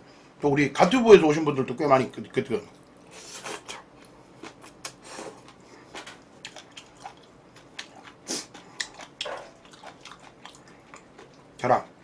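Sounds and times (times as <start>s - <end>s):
person chewing noodles: 2.7s - 11.6s.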